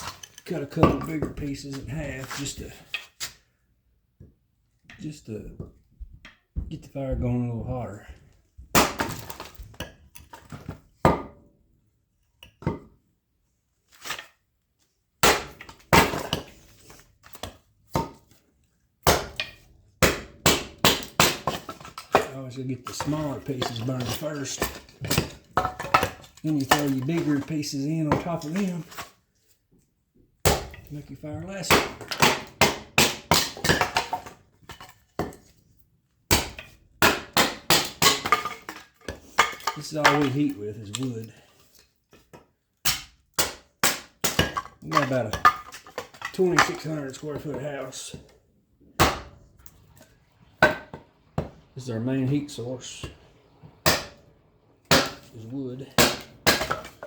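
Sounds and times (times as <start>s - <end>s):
axe chopping firewood: 8.7s - 11.4s, 15.2s - 18.2s, 19.0s - 29.1s, 30.4s - 35.5s, 36.3s - 40.6s, 42.3s - 48.3s, 49.0s - 50.0s, 50.6s - 51.6s, 53.8s - 54.2s, 54.8s - 57.0s.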